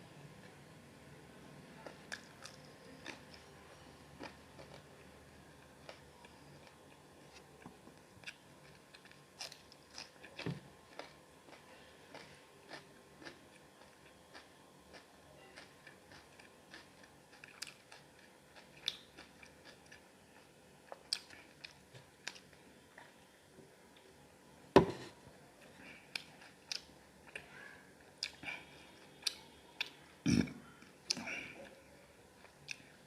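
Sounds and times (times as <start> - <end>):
chewing and biting chicken: 8.2 - 22.5
loud thump: 24.8 - 25.1.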